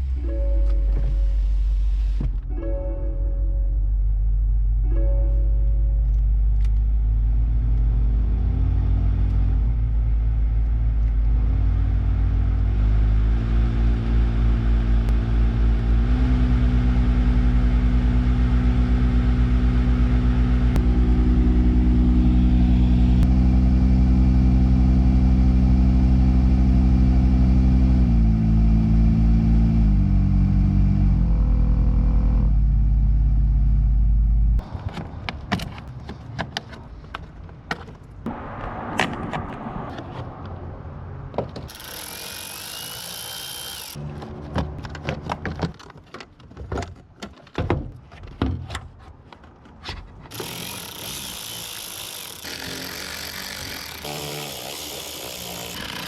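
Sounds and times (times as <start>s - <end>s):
blower motor humming: 41.7s - 44.1s, 50.3s - 56.0s.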